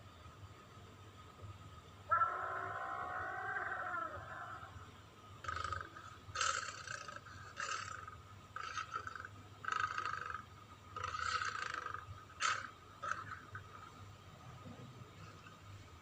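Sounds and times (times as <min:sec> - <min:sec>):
harsh dinosaur calls: 0:02.1 - 0:04.8, 0:05.4 - 0:13.9.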